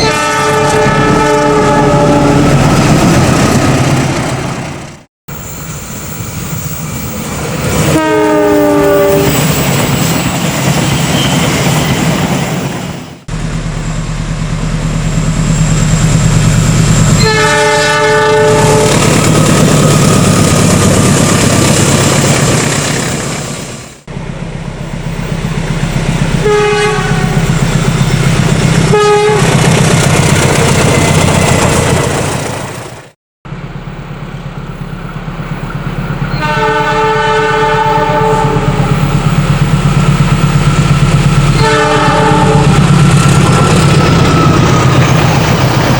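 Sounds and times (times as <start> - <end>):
train horn blasts: 0.0 - 2.6, 7.7 - 9.4, 17.2 - 19.0, 26.4 - 27.6, 28.8 - 29.6, 36.3 - 39.0, 41.5 - 42.9
train rumbling on rails: 0.0 - 45.9.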